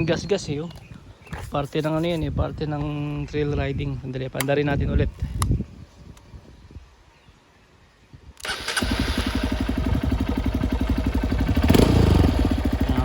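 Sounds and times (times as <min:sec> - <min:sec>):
motorcycle engine starting and idling: 0:08.4 - 0:13.0.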